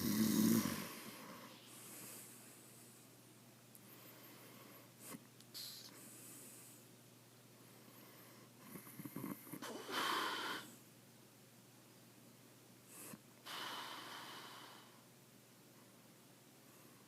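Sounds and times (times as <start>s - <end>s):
man snoring: 0.0s - 1.2s.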